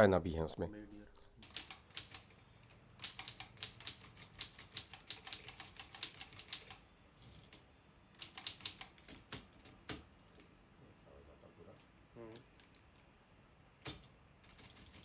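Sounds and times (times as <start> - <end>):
typewriter key strikes: 1.4 - 2.3, 3.0 - 6.8.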